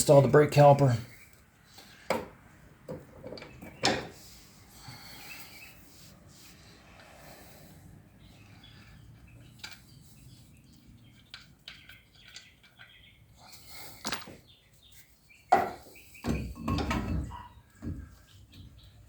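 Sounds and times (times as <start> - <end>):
heavy metal clunking and clattering: 16.3 - 18.7.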